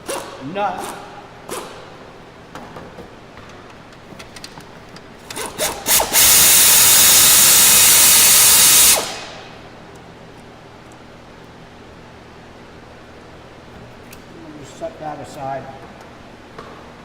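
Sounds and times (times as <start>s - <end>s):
power tool spinning: 5.3s - 9.5s.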